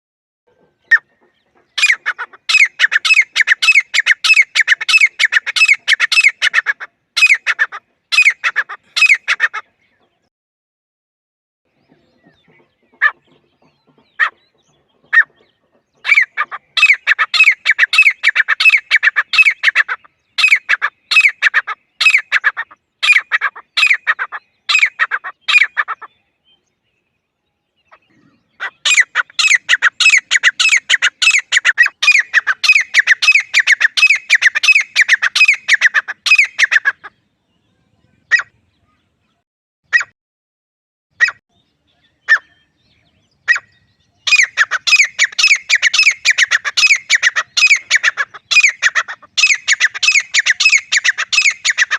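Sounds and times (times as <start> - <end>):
francolin calling: 27.8 - 36.9, 43.4 - 51.9.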